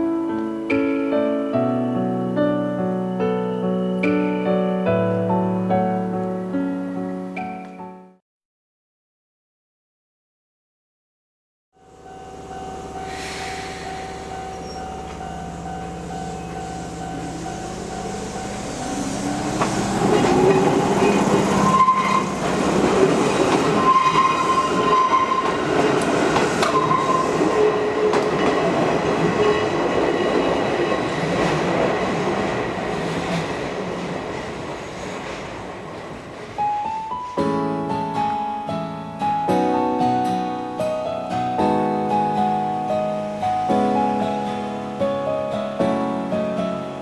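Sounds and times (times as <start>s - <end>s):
train wheels on rails: 12.0s - 37.4s
guitar music: 36.9s - 47.0s.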